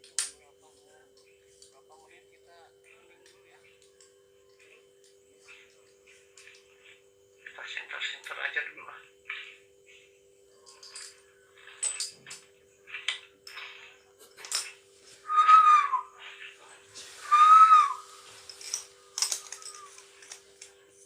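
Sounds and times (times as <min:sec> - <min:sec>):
high whistle-like calls: 0:15.2 - 0:16.3, 0:17.2 - 0:18.3, 0:19.0 - 0:20.0
faint clicks and rustles: 0:18.0 - 0:21.0.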